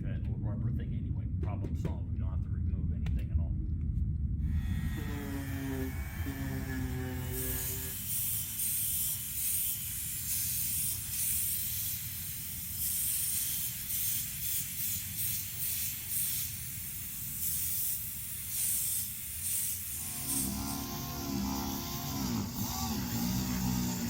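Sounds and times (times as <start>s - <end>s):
steady low hum: 0.0s - 24.0s
short bursts of hissing spray: 5.0s - 24.0s.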